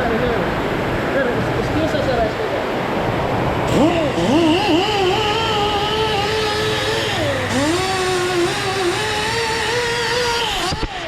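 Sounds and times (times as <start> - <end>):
small motor whining: 3.5 - 11.0.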